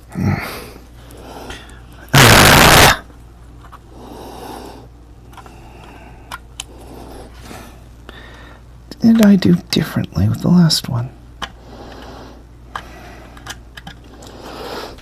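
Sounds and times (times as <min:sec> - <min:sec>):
airbrush hissing air: 0:02.2 - 0:03.0.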